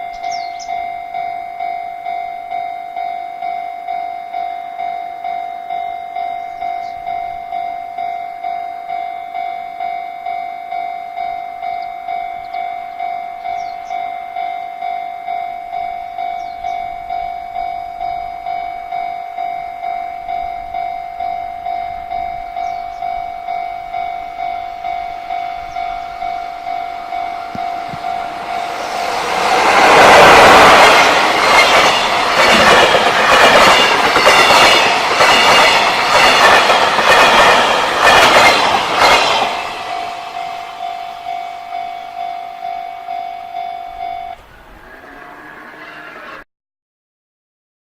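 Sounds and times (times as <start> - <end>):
level crossing warning bell: 0.0 - 44.4
freight train passing: 0.0 - 46.2
wagons clattering over rail joints: 29.8 - 39.7.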